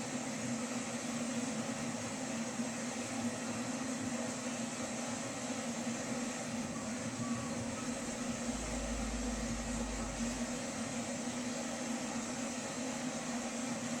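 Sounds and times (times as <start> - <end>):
low steady hum: 6.4 - 14.0.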